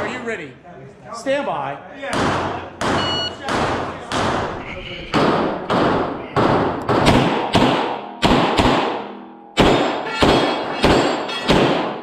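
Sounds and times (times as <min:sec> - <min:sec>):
pistol shots echoing: 0:05.2 - 0:12.0.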